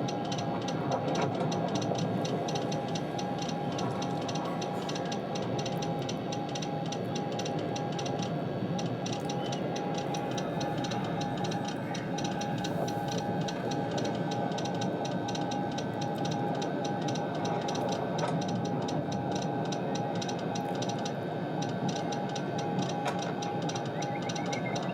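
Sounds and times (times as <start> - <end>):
morse code beeping: 2.4 - 16.3.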